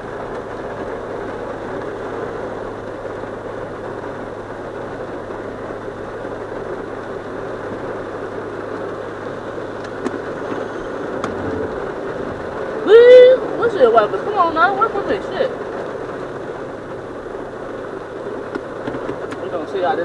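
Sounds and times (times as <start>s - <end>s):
car engine idling: 0.0s - 20.0s
steady rushing noise: 10.1s - 14.6s.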